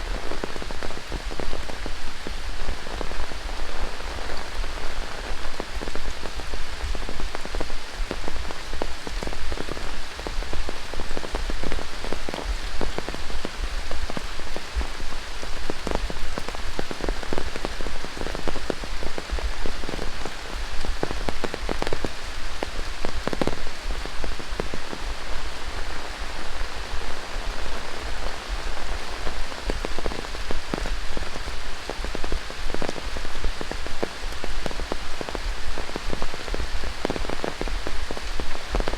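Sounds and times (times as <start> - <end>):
steady rain hiss: 0.0 - 38.9.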